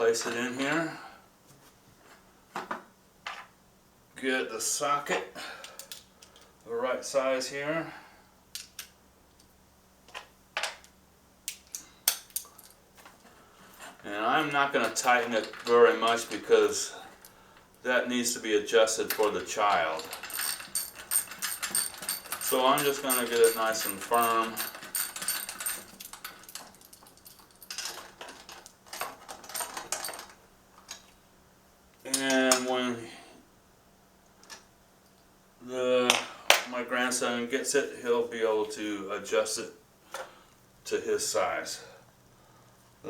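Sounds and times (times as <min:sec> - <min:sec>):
metal sockets clinking: 0:19.1 - 0:31.1.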